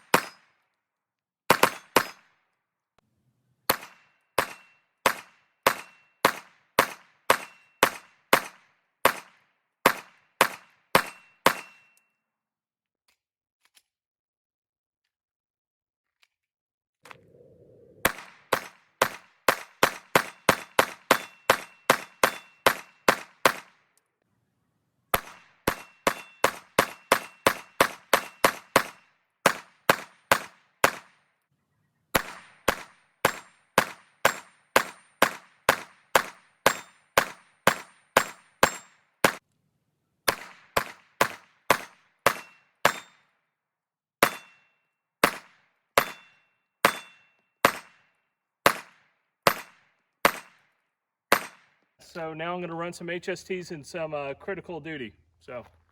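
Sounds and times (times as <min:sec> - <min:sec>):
rapid pistol shots: 0:00.0 - 0:00.5, 0:01.5 - 0:02.2, 0:03.7 - 0:11.8, 0:18.0 - 0:23.8, 0:25.1 - 0:31.2, 0:32.2 - 0:39.4, 0:40.3 - 0:43.2, 0:45.2 - 0:48.0, 0:48.6 - 0:50.6, 0:51.3 - 0:51.8.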